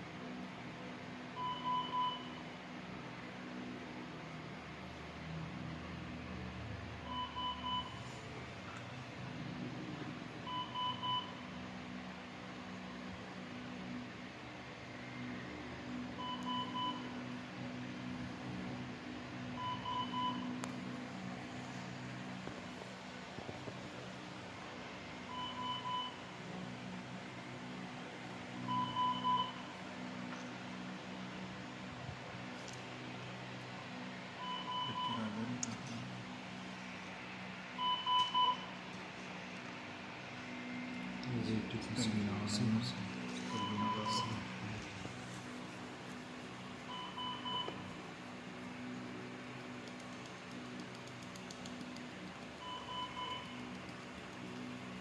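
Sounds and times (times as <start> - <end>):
low machinery hum: 0.0 - 55.0
medical equipment alarm beeping: 1.4 - 2.5, 7.0 - 8.2, 10.4 - 11.6, 16.2 - 17.2, 19.5 - 20.6, 25.2 - 26.3, 28.6 - 29.7, 34.4 - 35.4, 37.8 - 38.8, 43.1 - 44.8, 46.8 - 47.9, 52.6 - 53.8.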